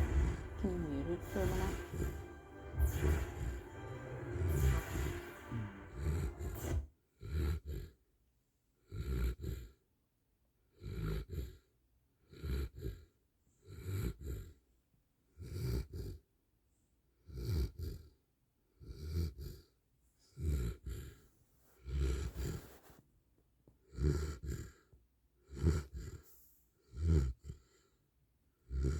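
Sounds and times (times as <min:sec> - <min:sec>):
rhythmic snoring: 0:00.0 - 0:08.0, 0:08.8 - 0:09.8, 0:10.7 - 0:14.6, 0:15.4 - 0:16.2, 0:17.2 - 0:18.2, 0:18.8 - 0:19.7, 0:20.3 - 0:21.2, 0:21.8 - 0:22.6, 0:23.9 - 0:27.9, 0:28.6 - 0:28.9.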